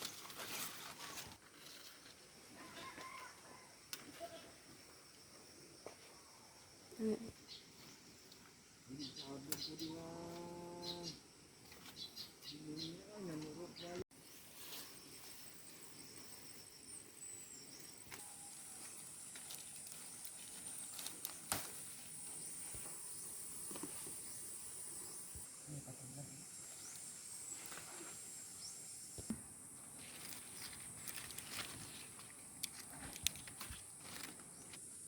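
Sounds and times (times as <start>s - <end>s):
insects trilling: 0.0s - 35.0s.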